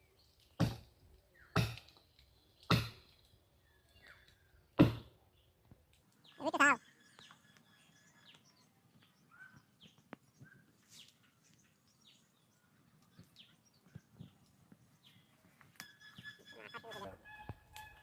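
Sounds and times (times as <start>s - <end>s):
bird chirps: 6.2s - 18.0s
loud wavering bird call: 15.8s - 18.0s.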